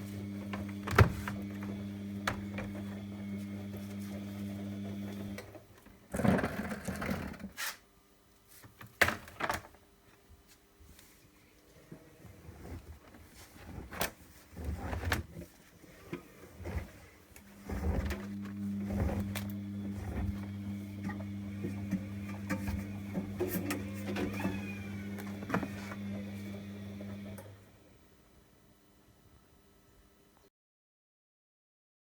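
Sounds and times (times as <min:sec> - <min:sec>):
washing machine low hum: 0:00.0 - 0:05.8, 0:12.3 - 0:28.1.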